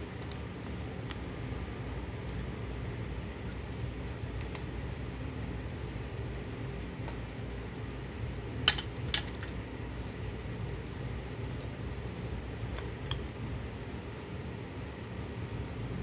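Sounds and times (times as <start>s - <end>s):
steady low hum: 0.0s - 16.0s
clicks and taps of small parts: 8.7s - 9.6s.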